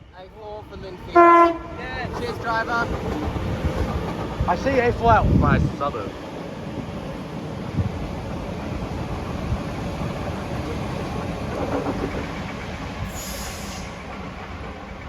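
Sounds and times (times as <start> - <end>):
electric train rail rumble: 0.0 - 15.0
high hiss: 13.0 - 14.1.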